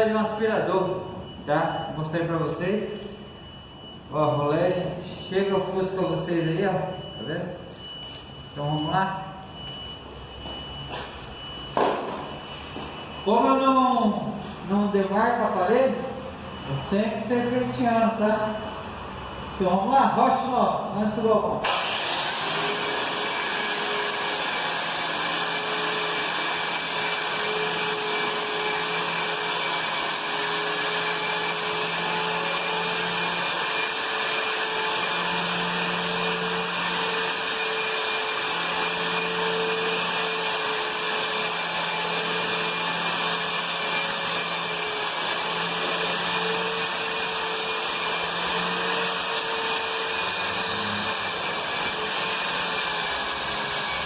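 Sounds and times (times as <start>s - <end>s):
electric sander whining: 21.6s - 54.0s.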